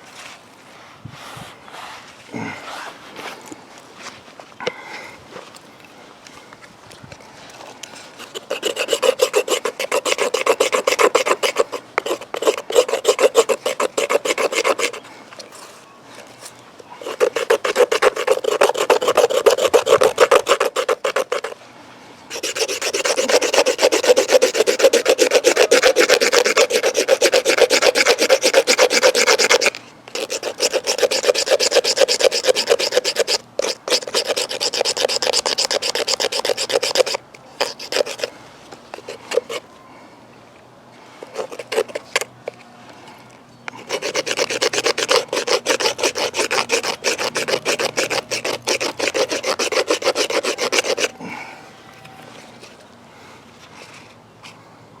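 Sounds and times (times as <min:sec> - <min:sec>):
small saw rasping through wood: 0:08.1 - 0:15.1, 0:17.0 - 0:21.6, 0:22.3 - 0:39.6, 0:41.2 - 0:42.6, 0:43.7 - 0:51.2.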